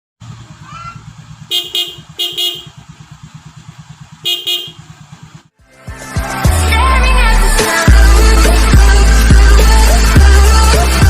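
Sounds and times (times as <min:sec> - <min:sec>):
scooter engine idling: 0:00.2 - 0:05.6
scooter horn double toots: 0:01.4 - 0:02.9, 0:04.2 - 0:05.0.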